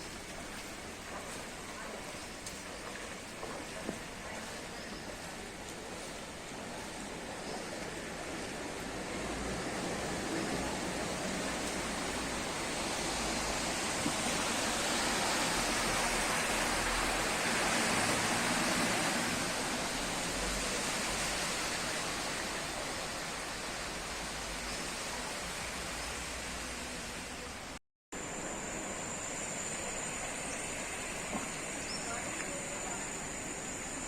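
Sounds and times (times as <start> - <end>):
heavy rain falling: 5.1 - 27.8.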